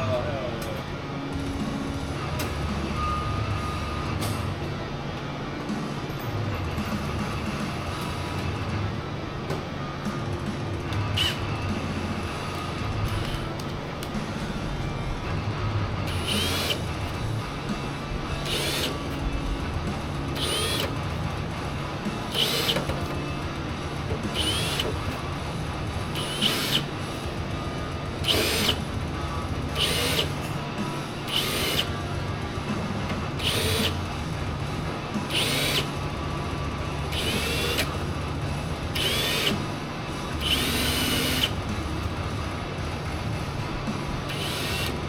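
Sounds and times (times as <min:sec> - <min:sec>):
background music: 0:00.0 - 0:45.0
power drill whirring and squealing: 0:11.1 - 0:11.5, 0:16.1 - 0:16.8, 0:18.4 - 0:19.1, 0:20.4 - 0:21.0, 0:22.3 - 0:22.9, 0:24.3 - 0:25.0, 0:26.2 - 0:26.9, 0:28.2 - 0:28.8, 0:29.8 - 0:30.4, 0:31.2 - 0:31.9, 0:33.4 - 0:34.0, 0:35.3 - 0:36.0, 0:37.1 - 0:38.0, 0:39.0 - 0:39.6, 0:40.4 - 0:41.6, 0:44.3 - 0:45.0.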